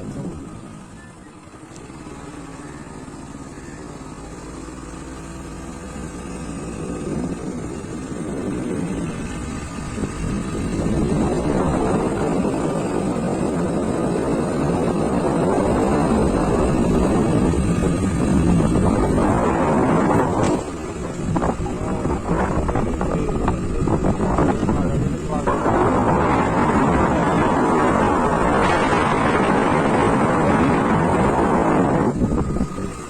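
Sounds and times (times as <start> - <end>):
rushing wind noise: 0.0 - 0.9, 6.2 - 33.0
motorbike engine running: 0.0 - 33.0.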